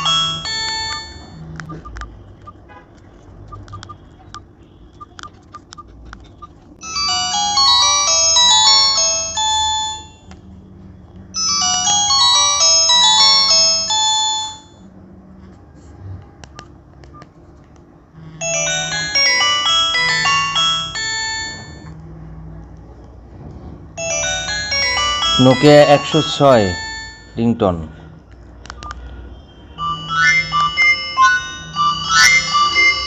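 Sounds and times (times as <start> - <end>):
electronic ringtone melodies: 0.0 - 2.6, 3.5 - 10.3, 11.4 - 14.8, 18.4 - 22.0, 24.0 - 27.5, 29.7 - 33.0.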